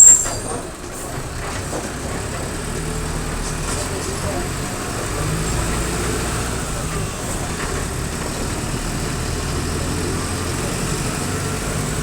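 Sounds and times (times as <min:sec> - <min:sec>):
faint falling whistle: 0:00.0 - 0:00.6
bus diesel engine droning: 0:00.0 - 0:12.0.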